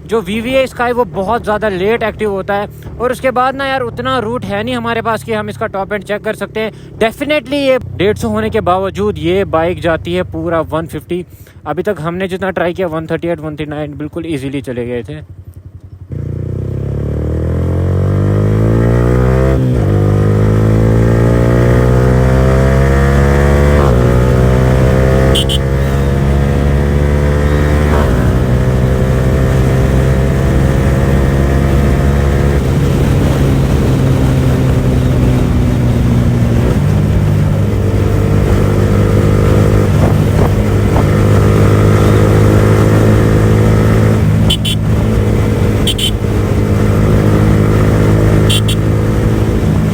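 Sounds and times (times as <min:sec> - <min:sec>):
motorcycle engine accelerating: 0:15.2 - 0:49.9.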